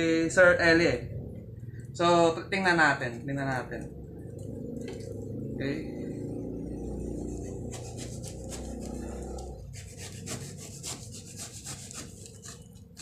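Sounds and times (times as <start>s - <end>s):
low rumble: 0.0s - 9.7s
cardboard rubbing and scraping: 7.5s - 13.0s.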